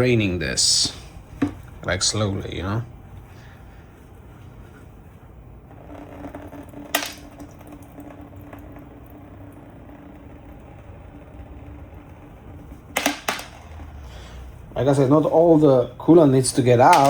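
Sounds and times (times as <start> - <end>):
liquid trickling into bucket: 5.8 - 11.8.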